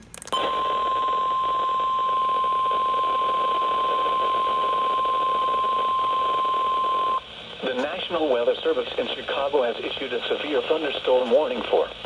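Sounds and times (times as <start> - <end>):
loud high alarm tone: 0.4 - 7.2
radio hiss: 0.4 - 12.0.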